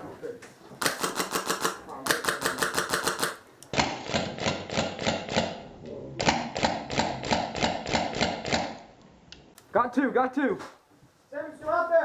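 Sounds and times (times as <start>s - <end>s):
airsoft rifle rapid firing: 0.8s - 5.6s, 6.2s - 8.8s.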